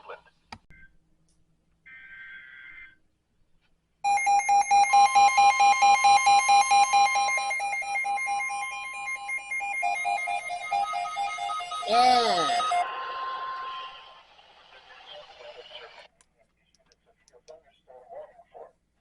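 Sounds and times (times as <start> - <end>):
steady warning alarm tone: 4.0 - 14.2
rapid alert beeping: 4.1 - 14.0
data-burst screech: 11.9 - 14.6.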